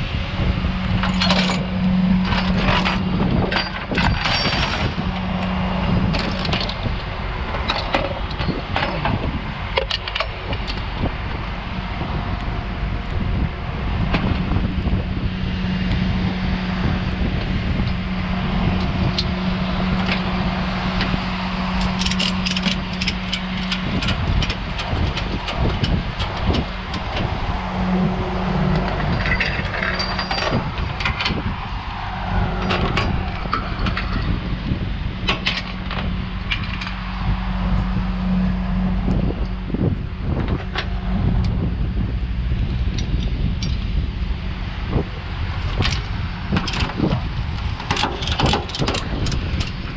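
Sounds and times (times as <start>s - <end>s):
road and wind noise: 0.0s - 49.9s
truck engine humming: 0.0s - 49.9s
metallic clinks and clanks: 0.9s - 6.9s, 18.8s - 31.6s, 32.6s - 34.4s, 35.3s - 37.3s.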